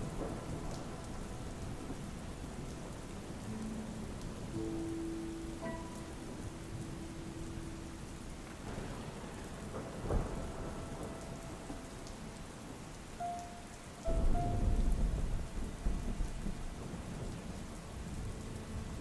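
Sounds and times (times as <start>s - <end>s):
thunder: 0.0s - 3.8s, 8.4s - 12.9s, 14.0s - 19.0s
faint held musical notes: 0.0s - 19.0s
steady rain: 0.0s - 19.0s.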